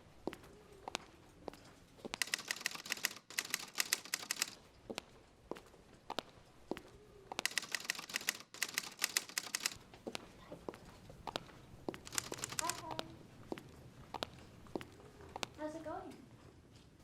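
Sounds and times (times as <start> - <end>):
typewriter keystrokes: 2.2 - 4.6, 7.4 - 9.8, 12.0 - 13.0.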